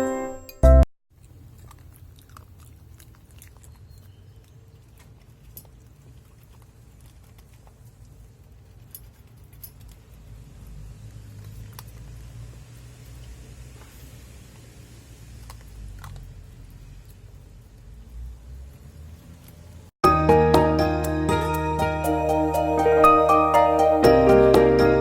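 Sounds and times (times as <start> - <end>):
dog chewing clicks: 1.2 - 13.4, 15.4 - 17.9.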